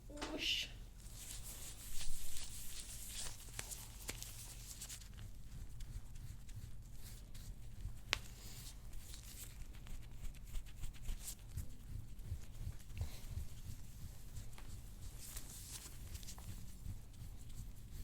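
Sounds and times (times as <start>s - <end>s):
steady low hum: 0.0s - 18.0s
rustling of hands and clothing: 0.2s - 18.0s.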